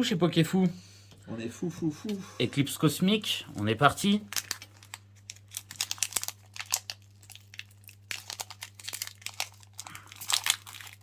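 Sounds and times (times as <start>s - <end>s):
foil wrapper crinkling and tearing: 3.5s - 11.0s.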